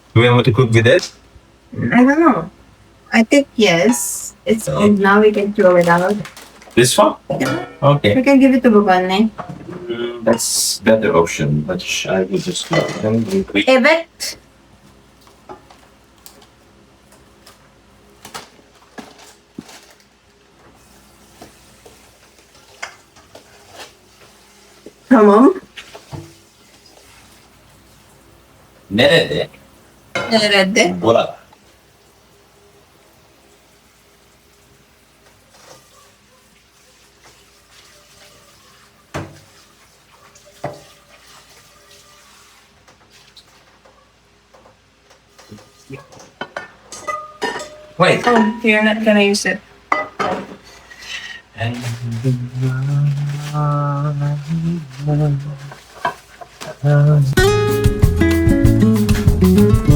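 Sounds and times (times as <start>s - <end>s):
food sizzling in a frying pan: 20.8s - 28.9s, 31.5s - 42.8s.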